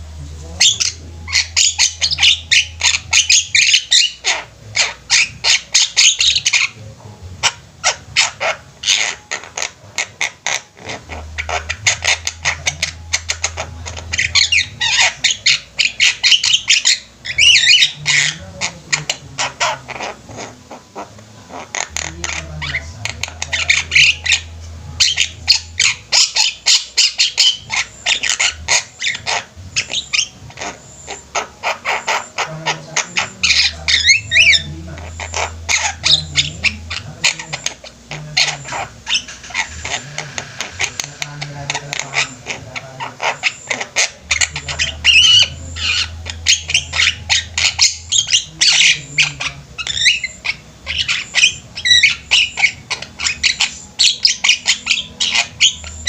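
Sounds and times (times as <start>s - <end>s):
birds chattering and squawking: 0.0s - 56.0s
low hum: 20.2s - 31.6s.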